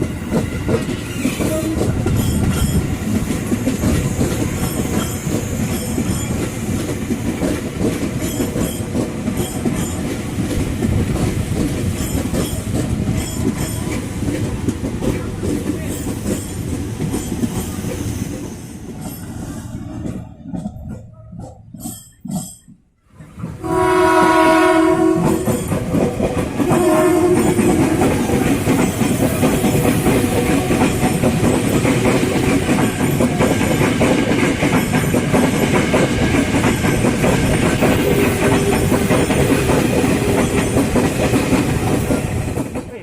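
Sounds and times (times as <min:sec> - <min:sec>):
train passing close by: 0:00.0 - 0:43.0
train horn blasts: 0:23.6 - 0:25.6, 0:26.6 - 0:28.1
wheels clattering over rail joints: 0:25.2 - 0:42.9.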